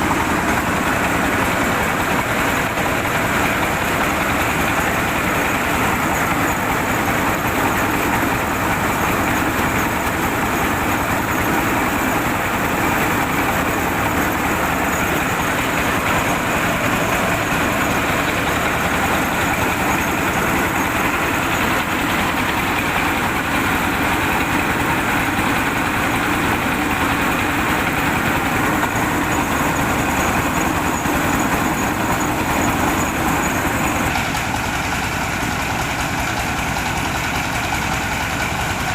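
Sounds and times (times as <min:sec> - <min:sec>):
diesel engine running: 0:00.0 - 0:38.9.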